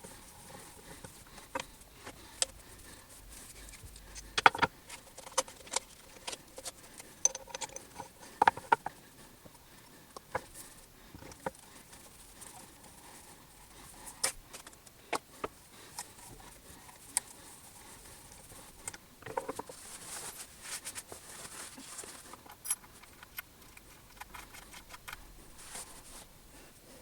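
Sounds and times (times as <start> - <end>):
small objects clicking and rustling: 4.3 - 8.9.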